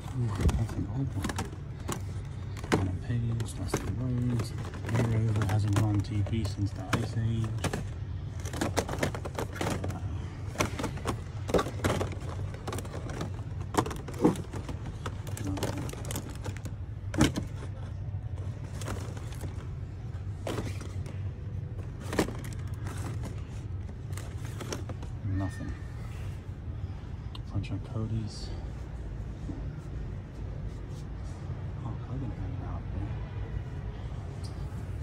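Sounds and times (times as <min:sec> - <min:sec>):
plastic packaging clicks and clacks: 0:00.0 - 0:19.7, 0:20.4 - 0:25.1
low store hum: 0:00.0 - 0:35.0.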